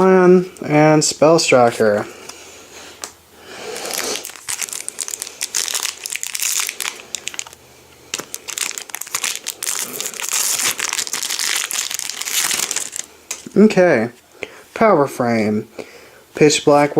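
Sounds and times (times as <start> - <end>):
foil wrapper crinkling: 3.6 - 13.5.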